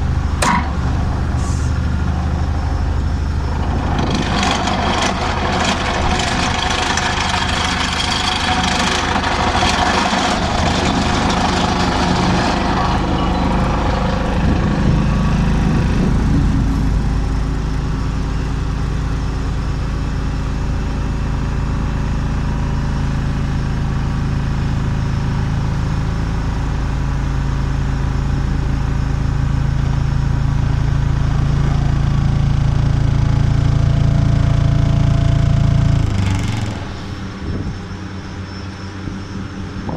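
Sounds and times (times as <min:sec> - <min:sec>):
harsh rattling noise: 0:00.0 - 0:18.6, 0:35.4 - 0:37.4
vibratory hammer low drone: 0:00.0 - 0:21.7.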